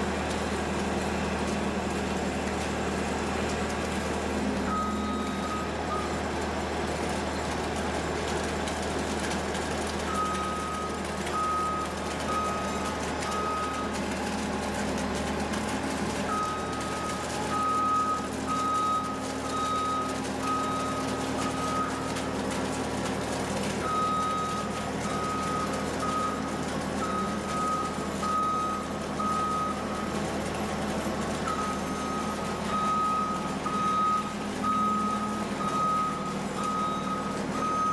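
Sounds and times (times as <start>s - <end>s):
engine running: 0.0s - 37.9s
reversing alarm beeping: 4.6s - 6.2s, 10.1s - 14.0s, 16.3s - 22.2s, 23.8s - 30.0s, 31.4s - 37.9s.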